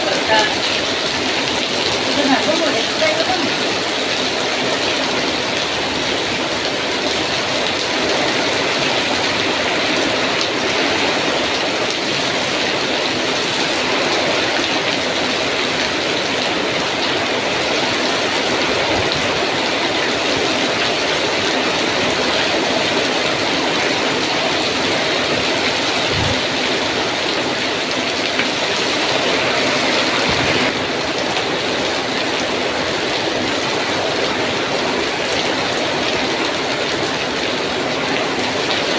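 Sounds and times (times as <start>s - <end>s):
heavy rain in strong wind: 0.0s - 38.9s
dull low thumps: 26.0s - 26.6s.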